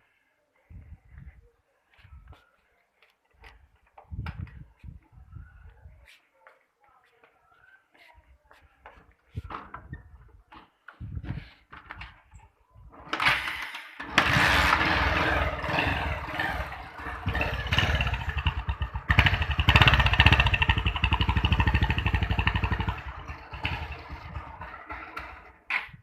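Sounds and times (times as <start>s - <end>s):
motorcycle engine revving: 13.2s - 25.6s.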